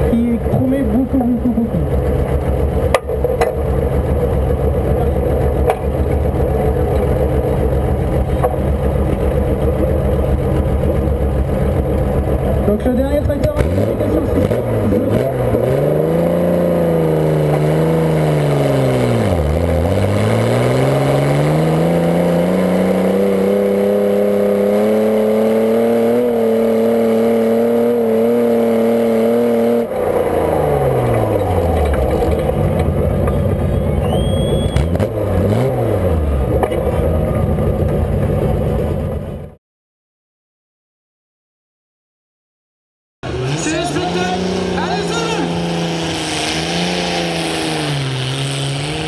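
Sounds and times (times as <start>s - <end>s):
tractor engine under load: 0.0s - 16.2s, 29.8s - 39.6s.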